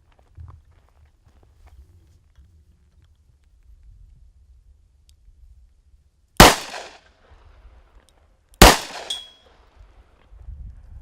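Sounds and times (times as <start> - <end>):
handgun shots echoing: 6.4 - 7.0, 8.6 - 9.4
high ringing: 8.9 - 9.4.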